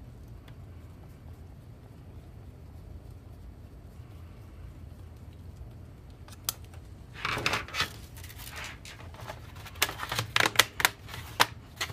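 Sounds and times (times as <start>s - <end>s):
scraping rustle: 7.1s - 10.1s
laptop parts clicking: 9.6s - 11.9s.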